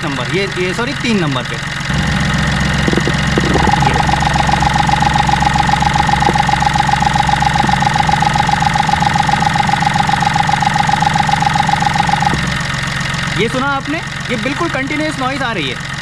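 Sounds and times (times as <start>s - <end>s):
rapid continuous ticking: 0.6s - 16.0s
steady ringing tone: 1.9s - 13.6s.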